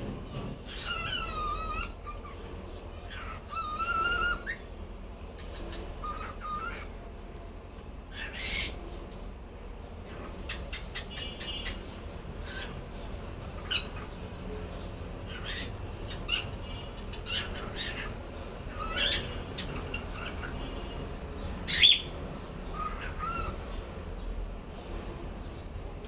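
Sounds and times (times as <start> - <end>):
cockatiel chirping and squawking: 0.7 - 2.4, 3.1 - 4.6, 5.4 - 6.9, 8.1 - 8.8, 10.2 - 12.8, 13.5 - 14.2, 15.3 - 20.6, 22.7 - 23.6.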